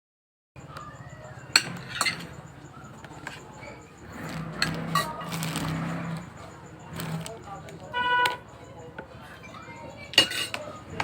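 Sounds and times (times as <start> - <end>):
small hard objects clinking: 3.0 - 8.4.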